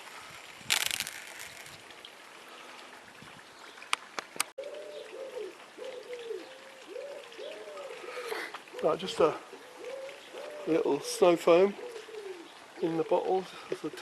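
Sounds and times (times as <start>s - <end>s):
pigeon cooing: 4.6s - 13.3s.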